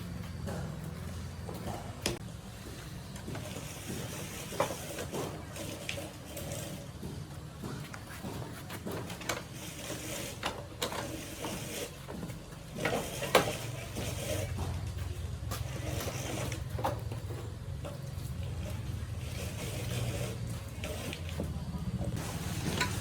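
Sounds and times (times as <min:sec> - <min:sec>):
scattered clicks and knocks: 0:00.1 - 0:18.1.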